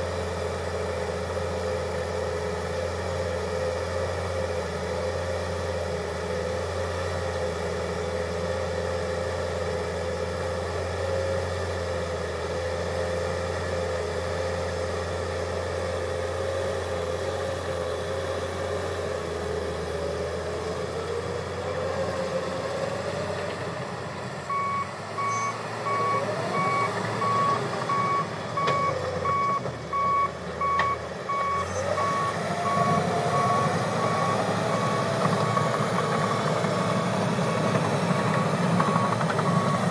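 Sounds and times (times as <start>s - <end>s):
bulldozer diesel engine whining: 0.0s - 39.9s
reverse alarm beeping: 24.5s - 34.6s.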